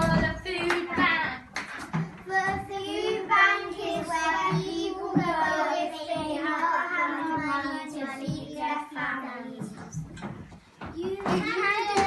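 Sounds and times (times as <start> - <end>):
children singing: 2.3 - 9.2.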